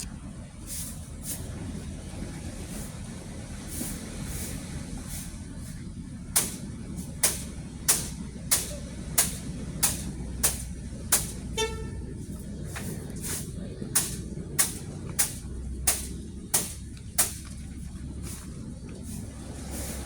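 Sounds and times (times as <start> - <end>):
vehicle engine rumble: 0.0 - 20.0
short horn toot: 11.2 - 12.1.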